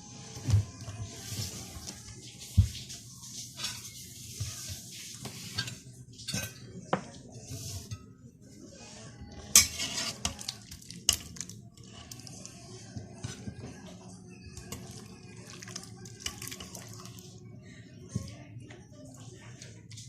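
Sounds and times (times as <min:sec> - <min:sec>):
metal utensil clinking against pot: 0:09.5 - 0:10.5.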